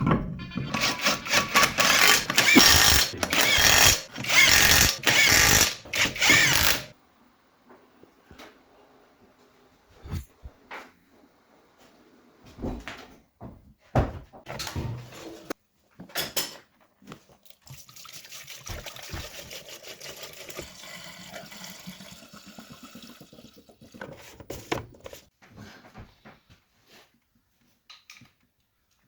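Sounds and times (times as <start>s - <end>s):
liquid pouring: 17.6s - 24.4s.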